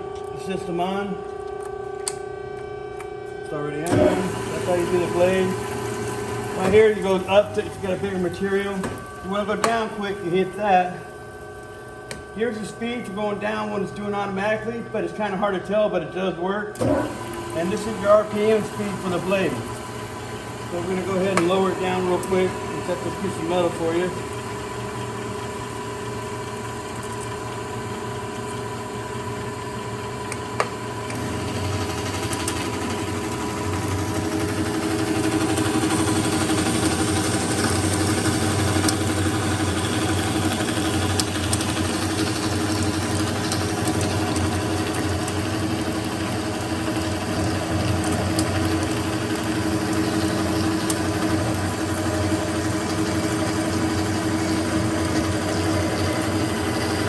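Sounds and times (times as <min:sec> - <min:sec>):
band saw cutting metal: 0:03.9 - 0:05.6.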